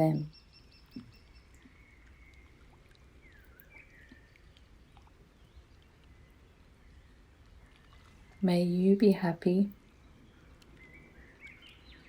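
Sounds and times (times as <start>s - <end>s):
faint bird chirps: 0.0s - 8.4s.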